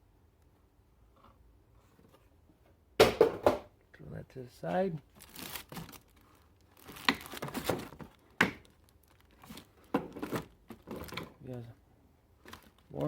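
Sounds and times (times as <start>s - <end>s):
paper and plastic crinkling: 5.0s - 11.7s, 12.4s - 13.0s.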